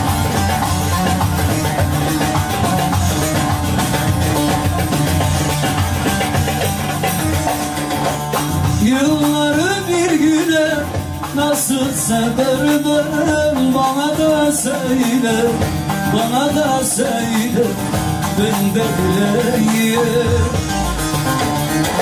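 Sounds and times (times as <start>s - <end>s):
band playing instrumental: 0.0s - 22.0s
person singing: 8.8s - 21.0s.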